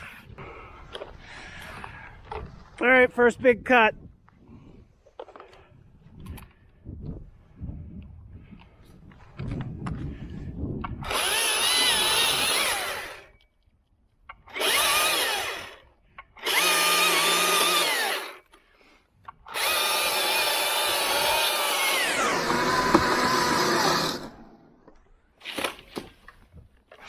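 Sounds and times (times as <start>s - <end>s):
chainsaw cutting wood: 10.9s - 13.4s, 14.3s - 18.6s, 19.4s - 26.2s.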